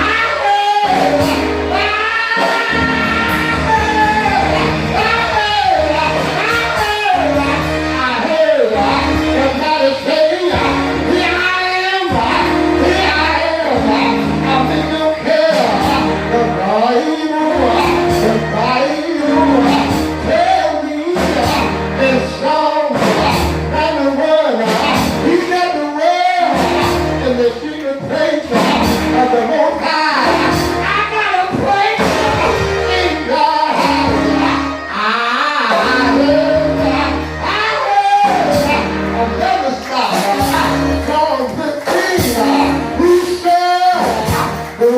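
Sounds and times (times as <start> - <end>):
gospel singing: 0.0 - 44.9
held instrumental chords: 0.0 - 44.9.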